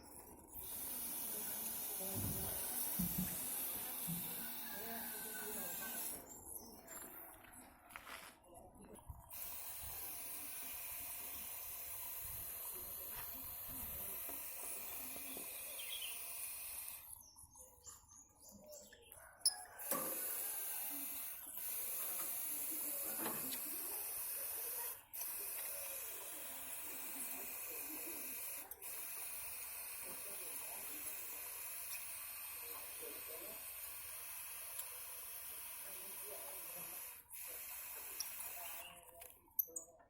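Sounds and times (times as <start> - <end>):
water spray hissing: 0.5 - 6.4, 9.3 - 17.3, 19.8 - 39.3.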